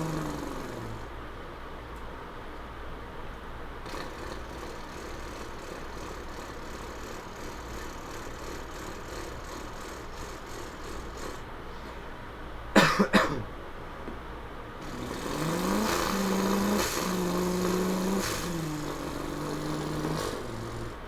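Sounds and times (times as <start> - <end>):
person imitating car engine: 0.0 - 1.1, 3.9 - 11.4, 14.8 - 21.0
short vocal bursts: 0.0 - 1.1, 3.8 - 11.5, 14.8 - 21.0.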